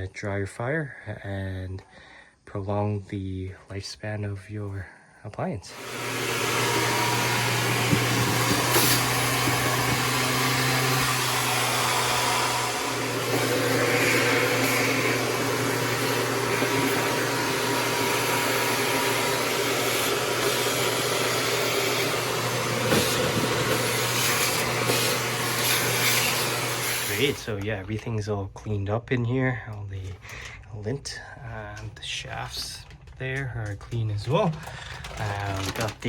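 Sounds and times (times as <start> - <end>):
vacuum cleaner running: 5.7 - 27.6.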